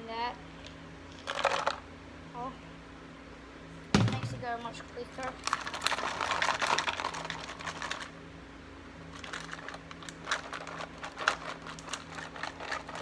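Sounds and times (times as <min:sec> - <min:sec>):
dry kibble clicking and crinkling: 0:00.6 - 0:01.9, 0:04.8 - 0:08.3, 0:09.0 - 0:13.0.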